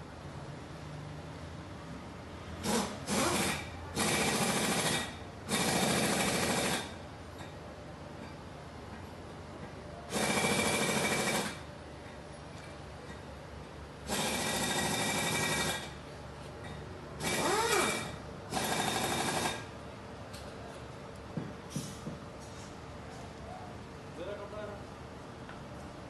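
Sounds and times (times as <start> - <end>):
power tool motor whirring: 17.2 - 19.6.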